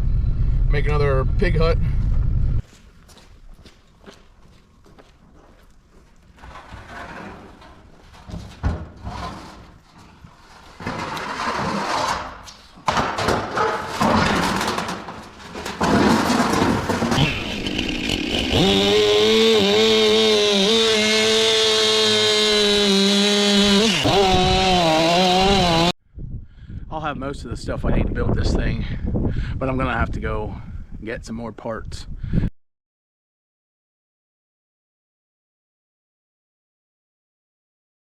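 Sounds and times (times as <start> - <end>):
clattering and rustling: 6.0 - 17.2
small engine running at high speed: 17.2 - 25.9.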